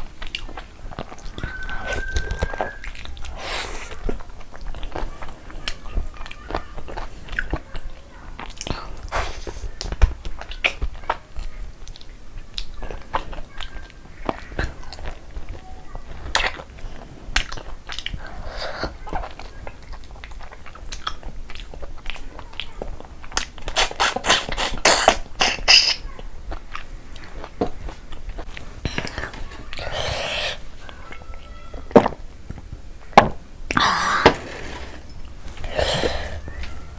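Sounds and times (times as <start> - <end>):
person chewing food: 0.0 - 5.8, 16.2 - 31.2
wet mouth clicks: 23.5 - 26.0.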